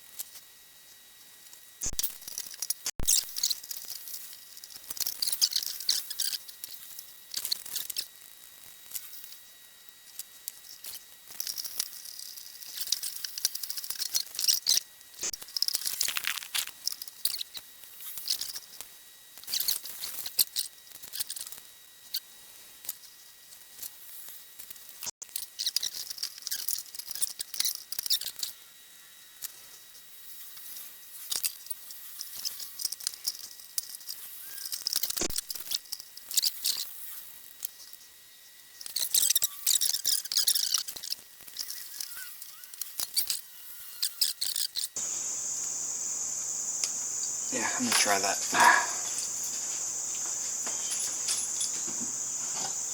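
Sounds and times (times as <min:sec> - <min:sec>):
small tools clicking and tapping: 0:01.5 - 0:08.1, 0:10.1 - 0:22.2, 0:24.6 - 0:28.6, 0:30.6 - 0:38.0, 0:38.8 - 0:43.4, 0:44.0 - 0:45.0, 0:47.9 - 0:52.9.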